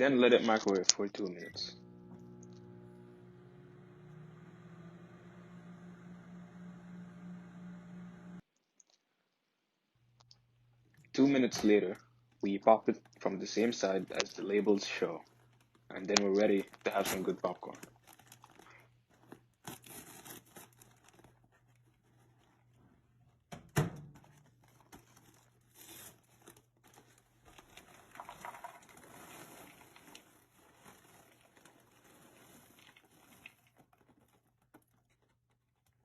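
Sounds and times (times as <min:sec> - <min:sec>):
popcorn bag tearing and crinkling: 0:13.3 - 0:22.6, 0:24.4 - 0:36.0.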